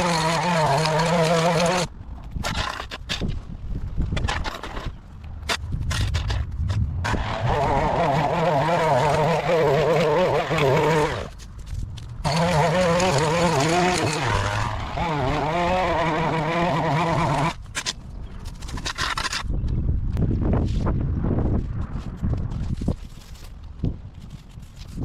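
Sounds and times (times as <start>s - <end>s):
small petrol engine running hard: 0.0s - 1.9s, 7.0s - 11.3s, 12.2s - 17.6s.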